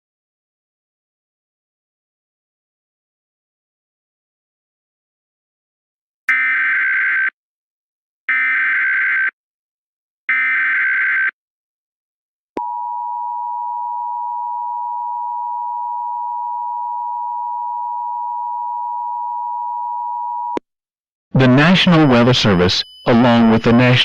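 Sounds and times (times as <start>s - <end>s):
dual-tone attention signal: 21.4s - 24.0s
warbling data tones: 21.4s - 24.0s.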